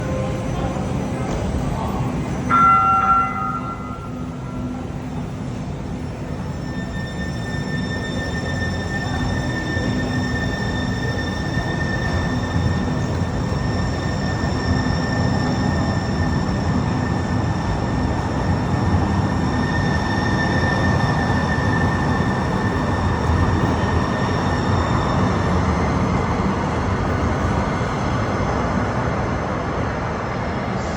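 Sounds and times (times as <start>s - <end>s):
light rail train rumbling: 0.0s - 30.9s.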